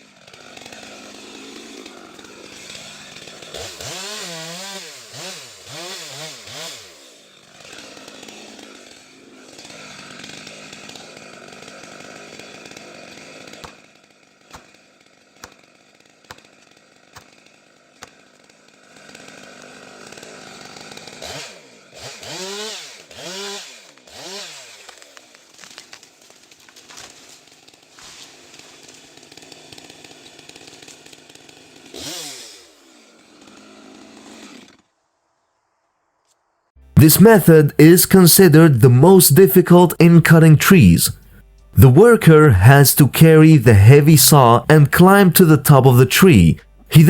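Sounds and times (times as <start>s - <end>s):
chainsaw engine revving: 0.0s - 25.2s, 27.6s - 34.8s.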